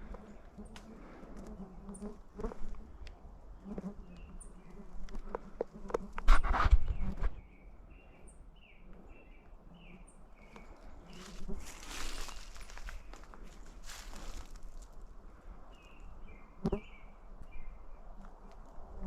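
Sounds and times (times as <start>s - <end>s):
flies buzzing: 0.0s - 3.0s, 3.6s - 7.4s, 10.6s - 12.0s
footsteps rustling on forest floor: 0.0s - 3.0s, 10.4s - 15.2s.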